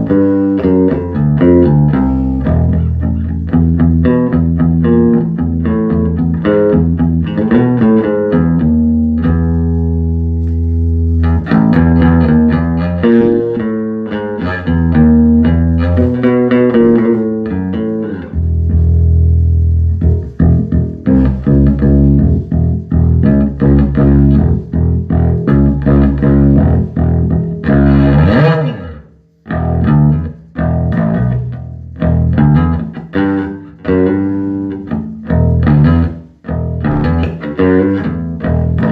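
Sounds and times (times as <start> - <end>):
electric bass guitar plucked notes: 0.0 - 38.9.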